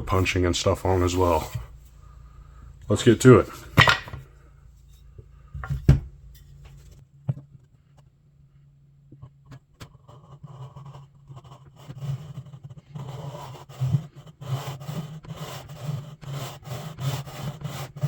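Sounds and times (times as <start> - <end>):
wood scraping and rubbing: 0.0 - 4.3
low steady hum: 0.0 - 14.1.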